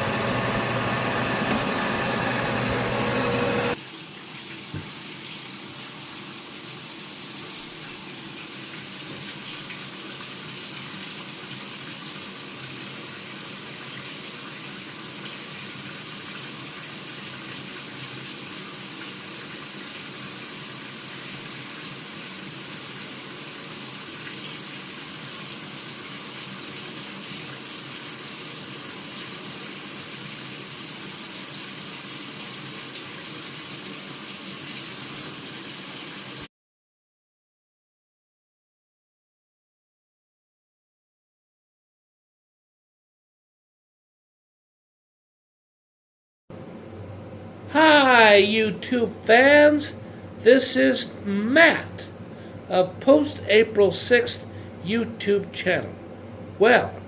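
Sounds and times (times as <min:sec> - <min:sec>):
loud machine hum: 0:00.0 - 0:03.8.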